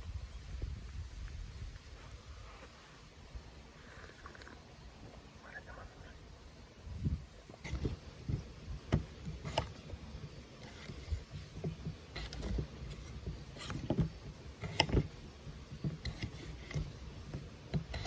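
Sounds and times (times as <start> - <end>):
irregular clicks and soft knocks: 7.4 - 18.0.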